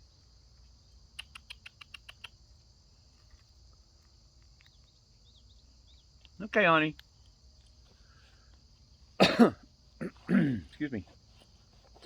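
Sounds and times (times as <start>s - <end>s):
insect trill: 0.0s - 12.0s
chipmunk ticking: 1.1s - 2.4s.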